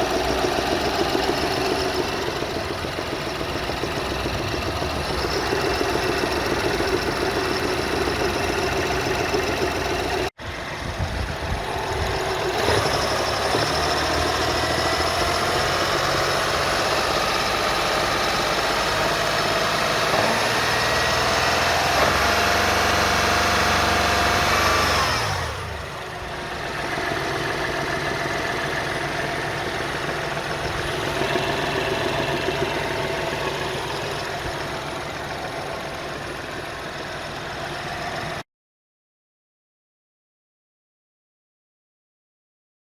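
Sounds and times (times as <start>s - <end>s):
rhythmic engine knocking: 0.0s - 18.9s, 26.0s - 38.4s
car engine running: 0.0s - 38.4s.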